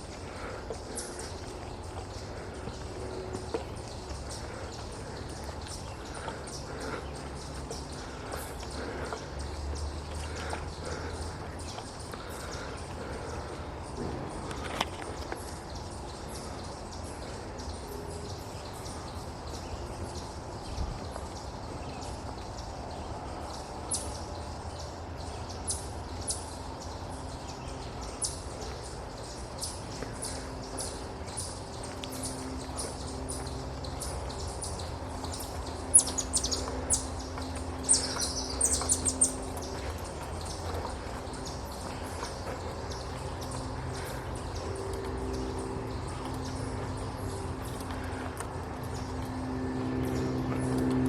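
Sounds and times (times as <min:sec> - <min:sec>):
footsteps on dirt trail: 0:00.0 - 0:16.6, 0:27.2 - 0:51.0
songbirds chirping: 0:00.0 - 0:51.0.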